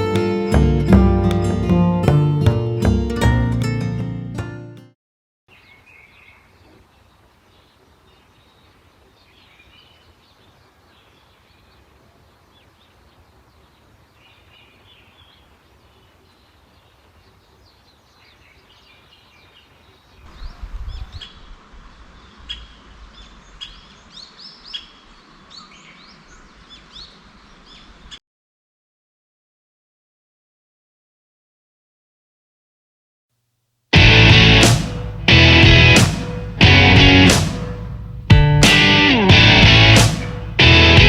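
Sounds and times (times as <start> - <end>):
faint outdoor hiss: 5.5 - 28.2
birds chirping and calling: 12.4 - 28.2.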